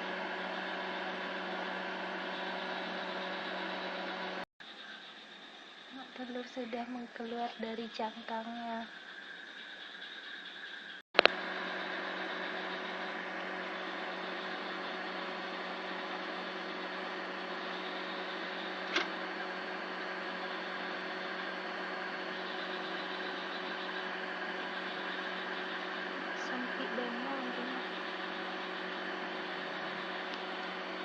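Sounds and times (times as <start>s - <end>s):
electric fan humming: 0.0s - 4.5s, 11.2s - 31.0s.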